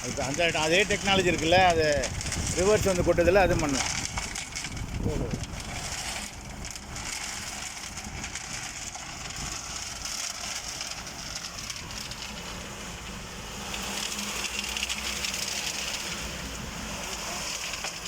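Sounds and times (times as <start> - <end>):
concrete mixer drum turning: 0.0 - 18.0
tractor engine running: 0.0 - 18.0.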